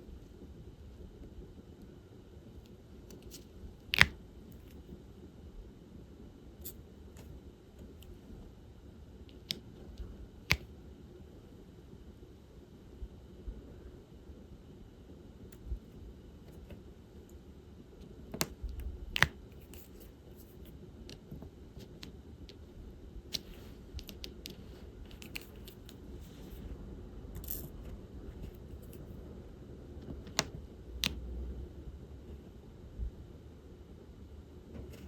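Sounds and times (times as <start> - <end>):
small plastic clicks and taps: 3.1 - 4.8, 10.5 - 10.7, 18.3 - 19.9, 30.0 - 31.2.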